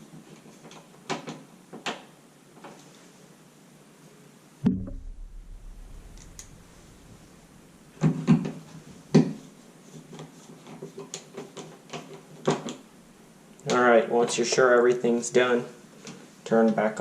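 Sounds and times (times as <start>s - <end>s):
low thump with rumble: 4.6s - 7.7s.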